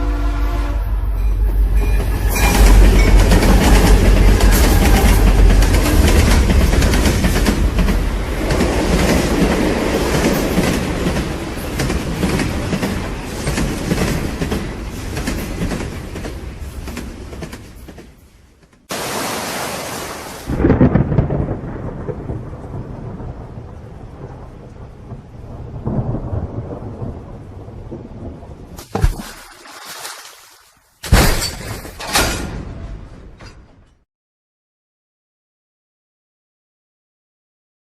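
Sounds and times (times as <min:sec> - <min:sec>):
thunder rumbling and cracking: 0:02.6 - 0:14.8, 0:20.5 - 0:28.8
rain: 0:03.4 - 0:16.6, 0:18.8 - 0:28.8.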